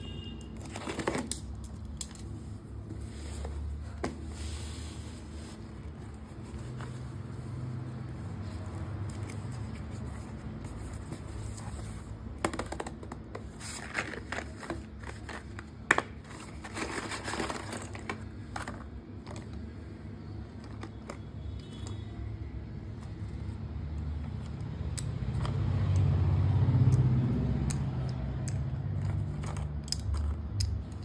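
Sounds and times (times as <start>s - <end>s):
packaging crinkling and tearing: 13.4s - 19.5s.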